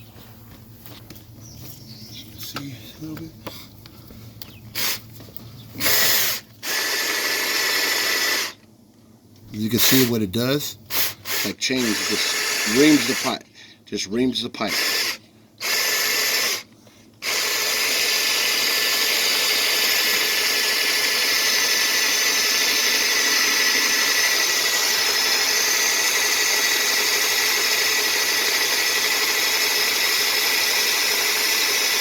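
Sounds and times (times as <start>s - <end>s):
drill grinding roots in a pipe: 5.8s - 8.6s, 10.9s - 13.4s, 14.6s - 32.0s.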